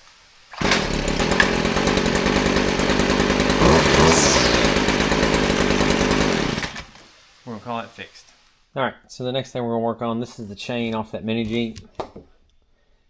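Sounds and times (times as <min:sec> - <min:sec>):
string trimmer engine running: 0:00.5 - 0:07.1.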